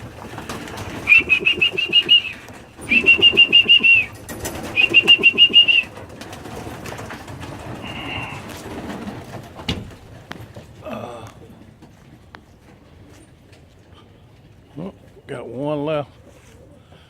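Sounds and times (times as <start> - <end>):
pigeons rapid pulsing: 0.0 - 17.0
high whistle-like tone: 1.0 - 4.1, 4.8 - 5.9.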